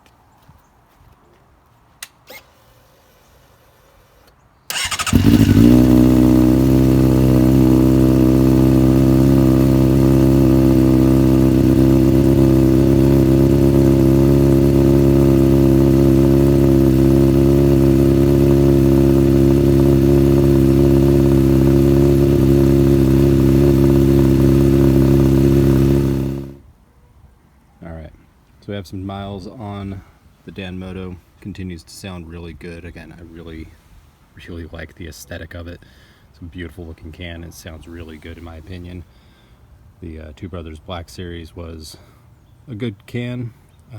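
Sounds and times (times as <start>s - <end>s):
motorcycle engine starting and idling: 2.0s - 26.6s.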